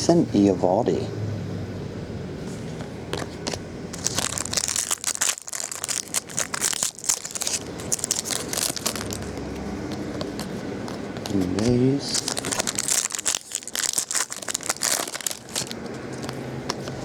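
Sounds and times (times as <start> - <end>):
card pack wrapper crinkling: 3.9 - 15.9.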